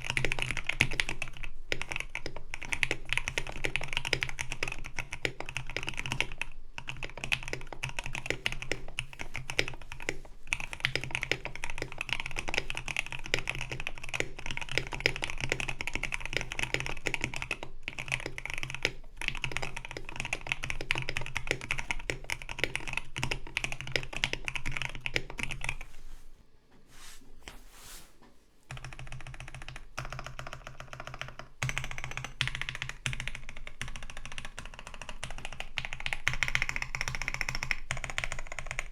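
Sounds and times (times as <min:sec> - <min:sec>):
mechanical keyboard typing: 0:00.0 - 0:25.8, 0:28.7 - 0:38.9.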